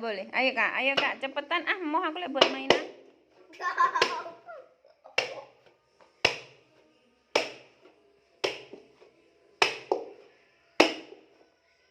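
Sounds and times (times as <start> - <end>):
dough slapped onto surface: 5.2 - 5.5, 6.2 - 6.6, 7.3 - 7.8, 8.4 - 8.9, 9.6 - 10.2, 10.8 - 11.2.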